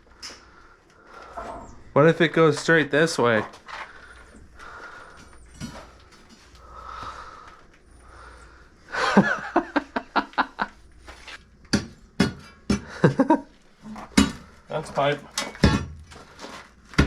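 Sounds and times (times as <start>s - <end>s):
hard breathing: 0.0s - 1.9s, 3.6s - 9.2s.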